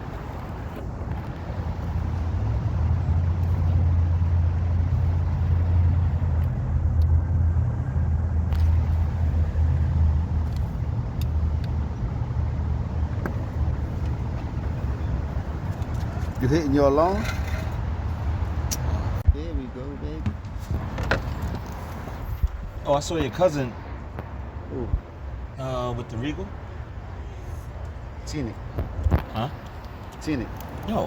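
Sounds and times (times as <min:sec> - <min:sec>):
vehicle engine and road drone: 0:00.0 - 0:31.0.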